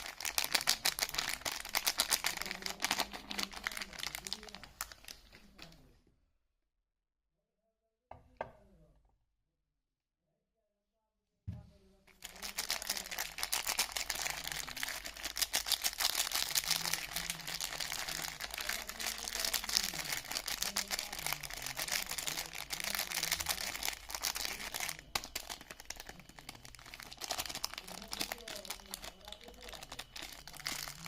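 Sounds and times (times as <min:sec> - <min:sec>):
packaging crinkling: 0:00.0 - 0:05.8, 0:12.1 - 0:31.0.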